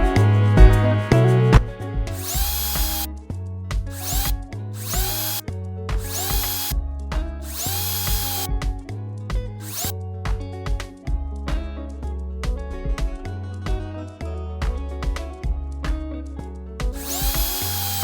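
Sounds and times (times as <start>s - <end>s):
background music: 0.0s - 2.2s
power drill whining: 2.2s - 3.1s, 3.9s - 5.4s, 6.0s - 6.8s, 7.4s - 8.5s, 9.6s - 9.9s, 17.0s - 18.0s.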